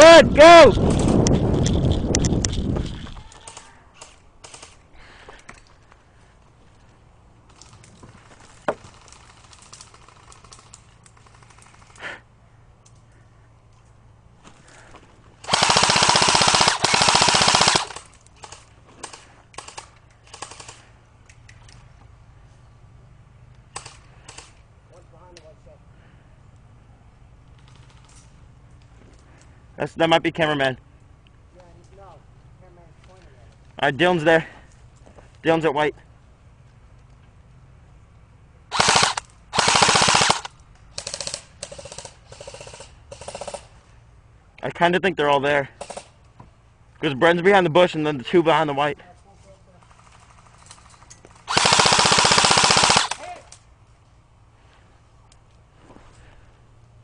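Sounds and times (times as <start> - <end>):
airsoft gun rapid bursts: 15.4 - 20.8, 38.7 - 43.7, 45.8 - 46.1, 49.8 - 53.4.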